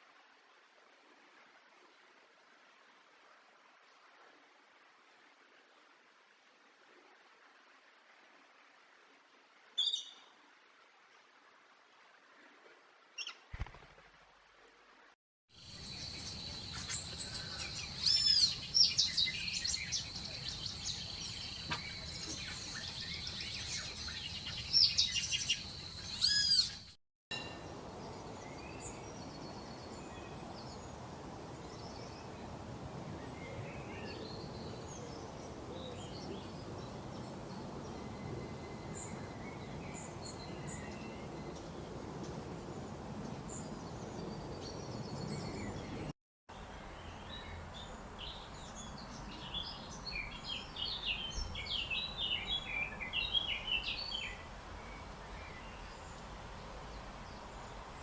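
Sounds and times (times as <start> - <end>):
faint bird chirps: 9.8 - 10.4
outdoor hiss: 15.6 - 26.6, 27.4 - 58.0
birds whistling calls: 16.2 - 26.8.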